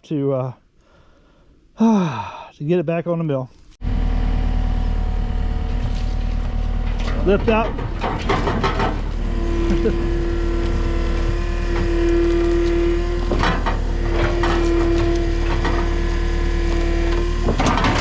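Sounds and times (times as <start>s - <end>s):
hydraulic whine: 3.8s - 18.0s
skid steer engine under load: 3.8s - 18.0s.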